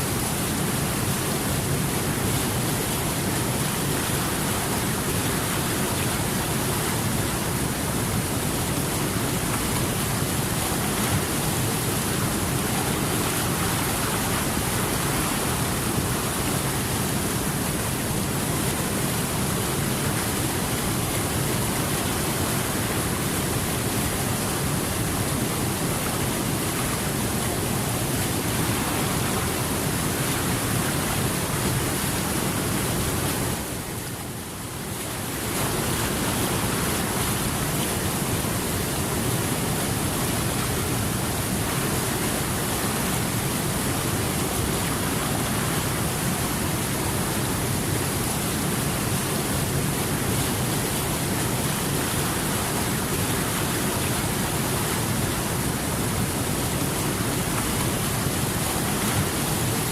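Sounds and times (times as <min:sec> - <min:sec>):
water rushing: 0:00.0 - 0:59.9.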